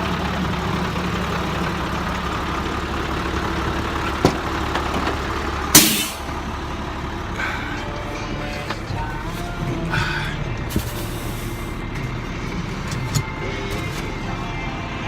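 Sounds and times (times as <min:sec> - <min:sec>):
vehicle engine idling: 0:00.0 - 0:15.0
loud bang: 0:05.8 - 0:06.2.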